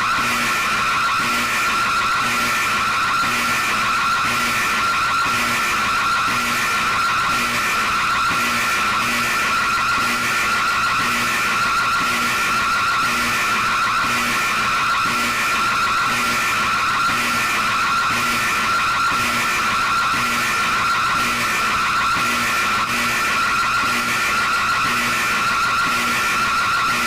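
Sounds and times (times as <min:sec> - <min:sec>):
electronic alarm tone: 0:00.0 - 0:27.0.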